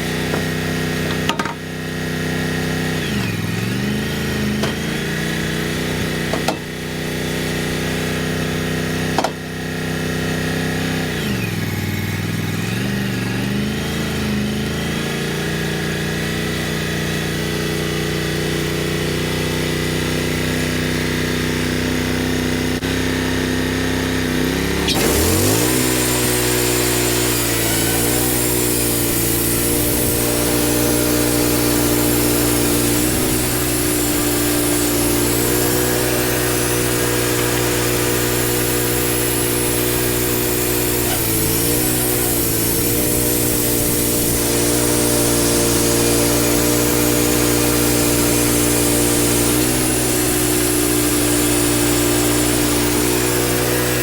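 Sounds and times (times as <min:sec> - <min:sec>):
sawmill engine running: 0:00.0 - 0:54.0
band blade hissing: 0:24.6 - 0:54.0.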